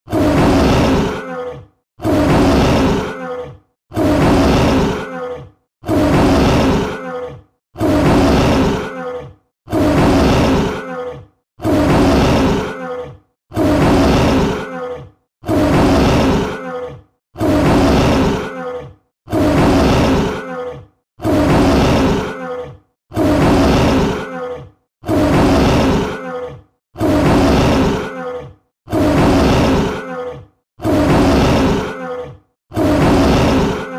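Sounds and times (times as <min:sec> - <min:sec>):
tiger roaring: 0:00.1 - 0:07.2, 0:07.8 - 0:16.8, 0:17.4 - 0:22.4, 0:23.1 - 0:24.4, 0:25.0 - 0:26.2, 0:27.0 - 0:28.2, 0:28.9 - 0:30.1, 0:30.8 - 0:32.0, 0:32.7 - 0:33.9.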